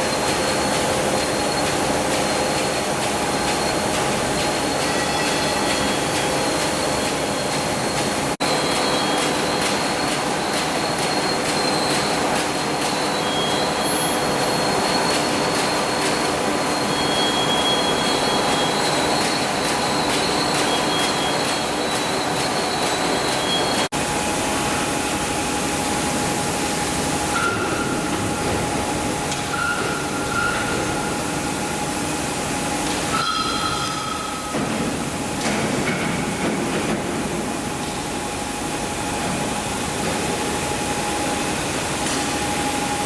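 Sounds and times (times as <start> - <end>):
machine rumble and hiss: 0.0 - 43.0.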